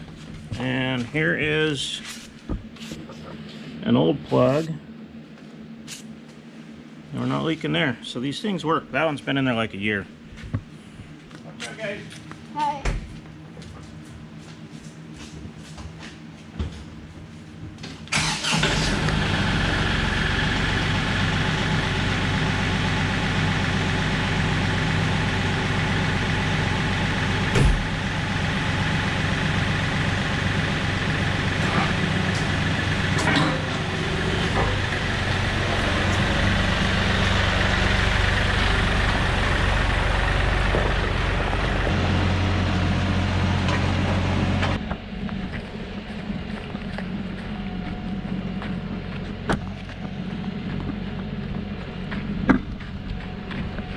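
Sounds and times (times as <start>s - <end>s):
vehicle engine running: 0.0s - 6.1s, 18.1s - 53.9s.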